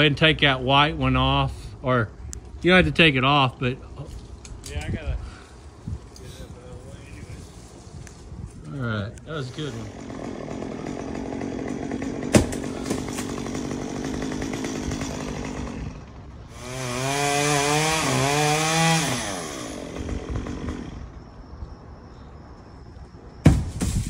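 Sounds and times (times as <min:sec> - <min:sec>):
chainsaw idling and revving: 0:09.4 - 0:21.3.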